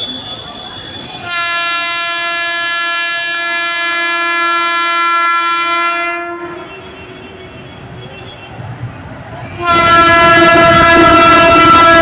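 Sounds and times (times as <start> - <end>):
train air horn blast: 1.2 - 7.3, 9.5 - 12.0.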